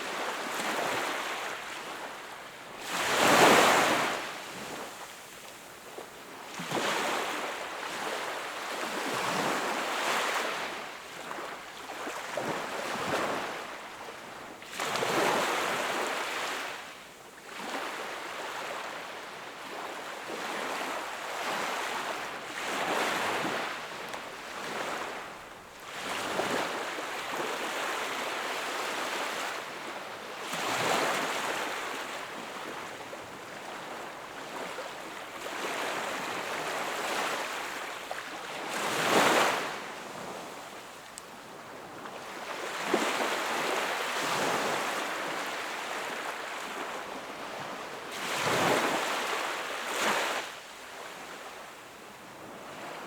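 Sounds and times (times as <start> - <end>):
sea waves breaking on shore: 41.8 - 51.5.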